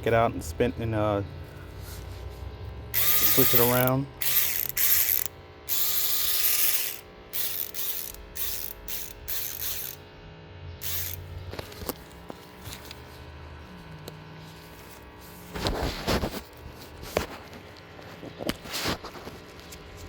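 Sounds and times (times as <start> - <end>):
electric ratchet clicking: 3.0 - 10.0, 10.8 - 12.0.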